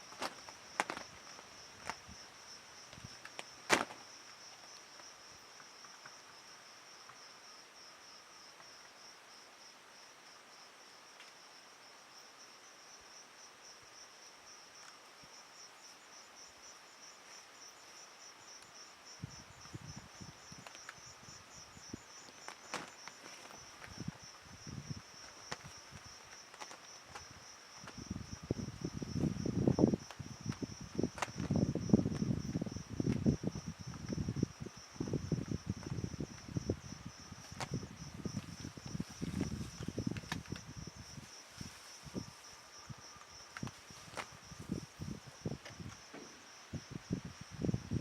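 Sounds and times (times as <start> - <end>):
soft crackling: 0.0 - 2.2
night insects trilling: 0.0 - 48.0.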